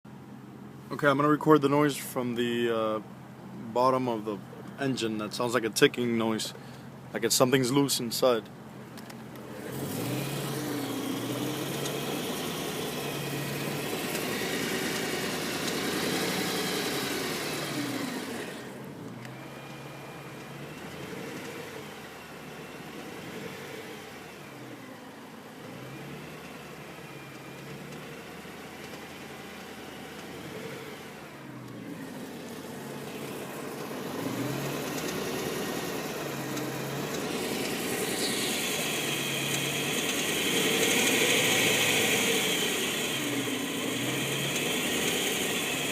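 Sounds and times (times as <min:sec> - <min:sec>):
engine ticking: 0:08.9 - 0:45.9
car engine revving: 0:09.2 - 0:45.9.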